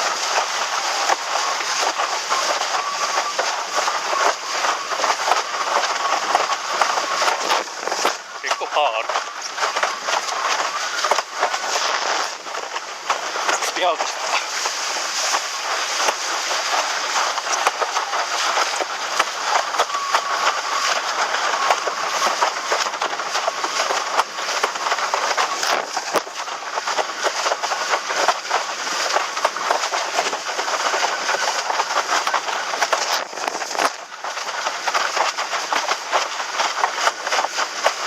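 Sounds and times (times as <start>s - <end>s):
choppy water splashing: 0.0s - 38.0s
strong wind on microphone: 2.4s - 27.2s.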